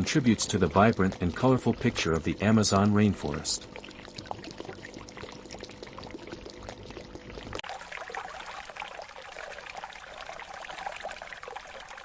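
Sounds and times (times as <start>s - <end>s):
small water splashes: 0.0s - 12.0s
water running and trickling: 0.0s - 12.0s
hissy water sound: 7.6s - 12.0s.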